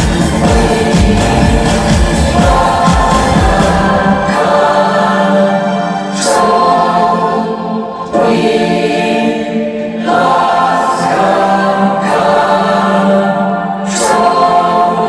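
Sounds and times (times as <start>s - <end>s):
low drone: 0.0s - 6.1s
choir singing sustained chords: 0.0s - 15.0s.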